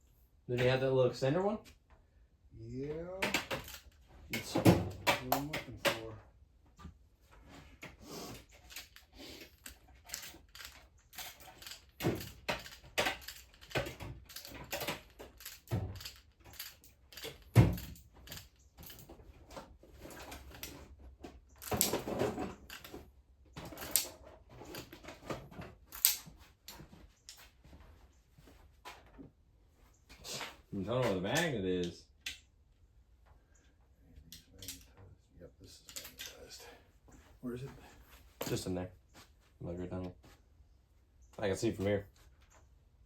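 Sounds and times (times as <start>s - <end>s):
metal tools clattering: 8.5s - 19.2s.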